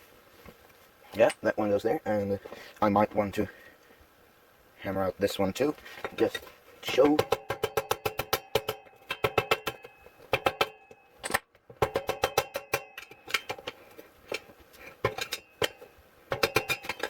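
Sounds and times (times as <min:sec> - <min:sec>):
hammer tapping on metal rod: 0:06.8 - 0:11.0.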